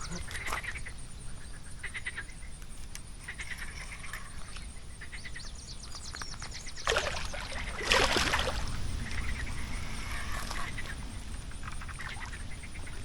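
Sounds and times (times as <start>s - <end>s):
loud water splashes: 6.9s - 8.8s.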